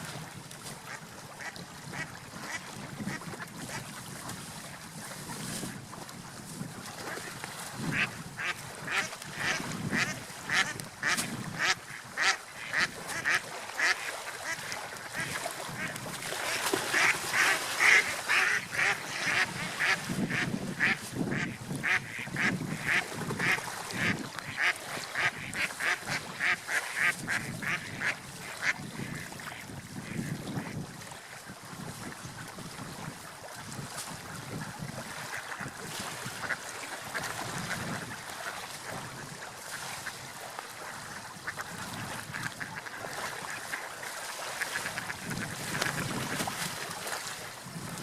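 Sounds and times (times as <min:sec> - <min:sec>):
ducks quacking: 0:07.9 - 0:29.4, 0:36.4 - 0:38.6, 0:41.4 - 0:43.9.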